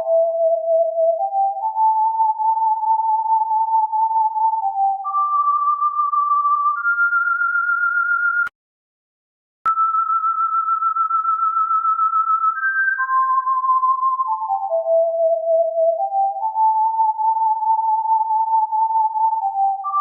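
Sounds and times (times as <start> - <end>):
electronic sine tone: 9.7 - 20.0.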